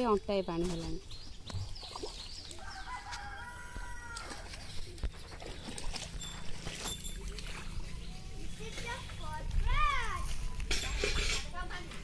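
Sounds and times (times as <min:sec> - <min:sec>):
rooster crowing: 0:02.6 - 0:04.5.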